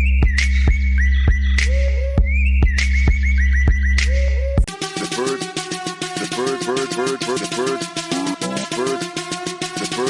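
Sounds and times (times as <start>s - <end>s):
fast electronic percussion beat: 0.0s - 10.0s
pitch-bending synth notes: 4.1s - 9.4s.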